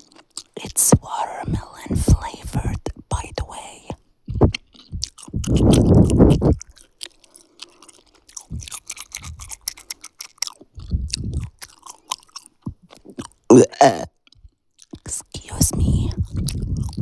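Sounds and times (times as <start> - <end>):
gum chewing mouth clicks and smacks: 0.0 - 17.0
soft low chews: 0.0 - 17.0
low mouth sound: 0.7 - 6.8, 8.3 - 10.0, 10.6 - 11.8, 12.7 - 17.0.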